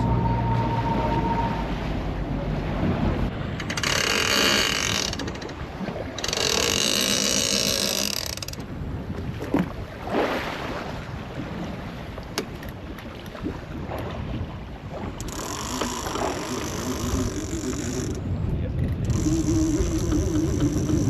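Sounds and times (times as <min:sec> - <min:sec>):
boat engine hum: 0:00.0 - 0:21.0
fishing reel ratchet buzzing: 0:03.6 - 0:05.5, 0:06.2 - 0:08.6, 0:15.2 - 0:18.2, 0:19.1 - 0:21.0.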